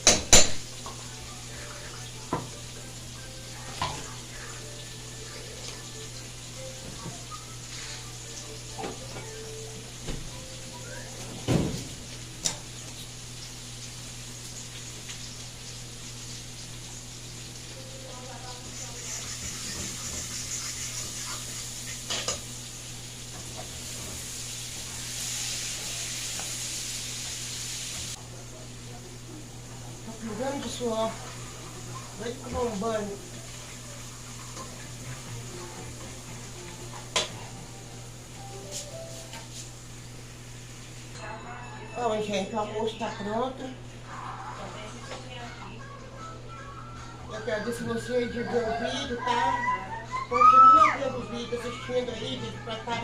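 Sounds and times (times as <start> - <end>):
dishes knocking: 0.0 - 0.7
water running from tap into sink: 0.0 - 9.4, 10.0 - 28.2, 30.0 - 37.4
food sizzling in frying pan: 0.0 - 41.2.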